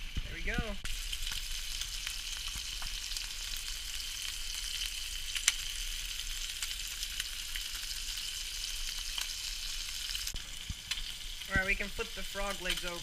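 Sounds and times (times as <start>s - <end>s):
food frying in hot oil: 0.0s - 13.0s.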